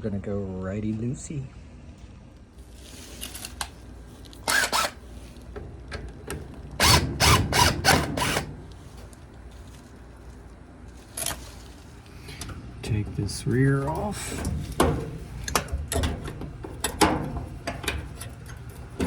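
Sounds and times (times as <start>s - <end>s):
quick wrench strokes: 4.4s - 5.0s
wrench metallic clicks: 4.4s - 5.0s.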